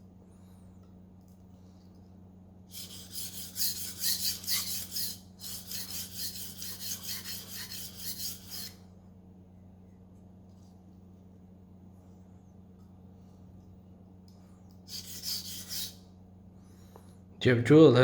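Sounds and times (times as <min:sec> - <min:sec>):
knife scraping on wet whetstone: 0:02.7 - 0:08.8, 0:14.9 - 0:16.0.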